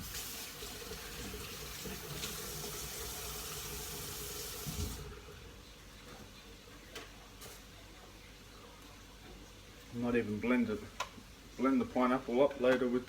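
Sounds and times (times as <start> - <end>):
tap running into a sink: 0.0 - 5.1.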